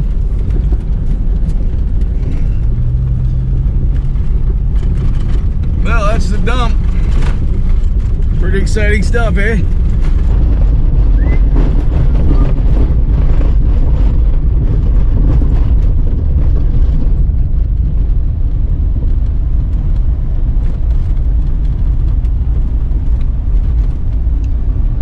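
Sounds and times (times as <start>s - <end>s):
vehicle engine and road rumble: 0.0s - 25.0s.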